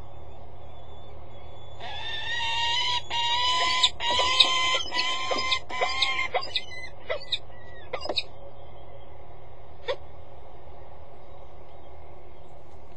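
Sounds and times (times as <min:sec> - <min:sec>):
low steady hum: 0:00.0 - 0:12.9
falcon calling: 0:01.6 - 0:08.3.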